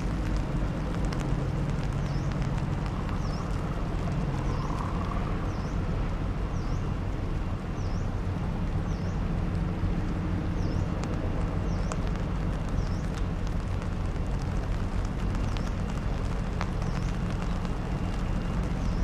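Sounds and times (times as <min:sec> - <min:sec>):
boat engine droning: 0:00.0 - 0:19.0
wind noise: 0:00.0 - 0:19.0
bird chirping: 0:01.8 - 0:05.9.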